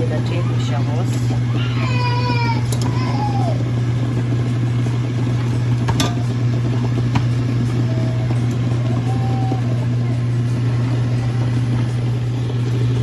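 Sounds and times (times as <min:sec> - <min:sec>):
low motor hum: 0:00.0 - 0:13.0.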